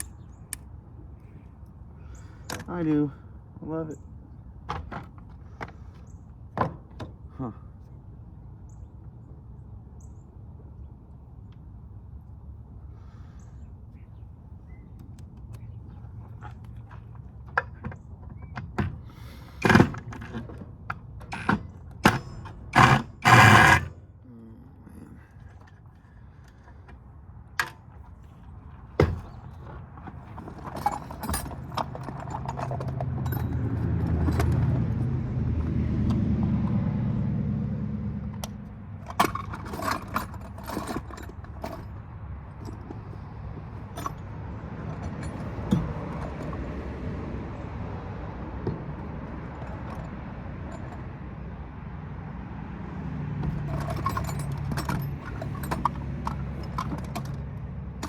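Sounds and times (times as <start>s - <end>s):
metal tools clinking and rattling: 19.6s - 23.9s, 29.0s - 35.0s, 39.0s - 46.6s, 49.5s - 51.1s, 53.4s - 58.0s.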